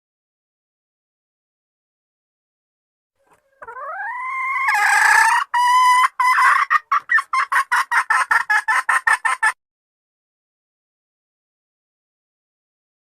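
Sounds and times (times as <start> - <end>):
hen clucking: 3.2 - 9.6.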